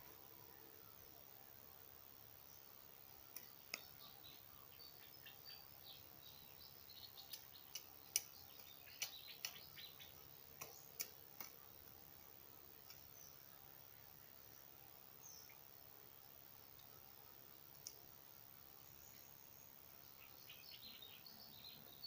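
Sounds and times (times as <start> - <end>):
faint birds chirping: 0.0 - 22.0
sharp clicks: 7.2 - 9.8, 10.6 - 11.6.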